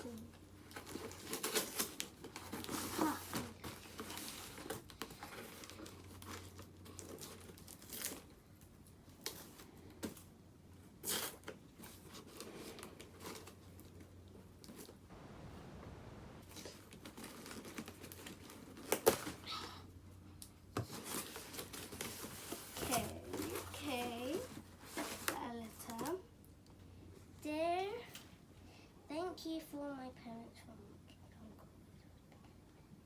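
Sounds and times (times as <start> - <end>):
packaging rustling and crumpling: 0.6 - 8.4, 16.4 - 19.4, 20.8 - 26.1.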